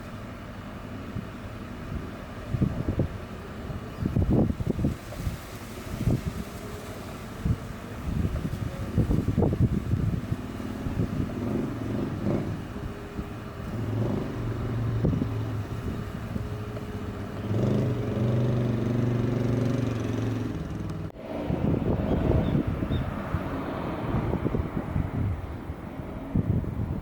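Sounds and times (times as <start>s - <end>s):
vehicle engine running: 0.0s - 27.0s
wind rumbling on microphone: 0.0s - 27.0s.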